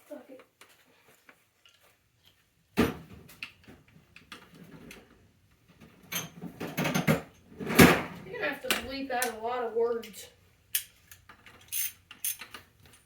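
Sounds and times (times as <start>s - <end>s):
hand tools clunking and knocking: 5.7s - 9.4s
tools clicking: 10.7s - 13.0s.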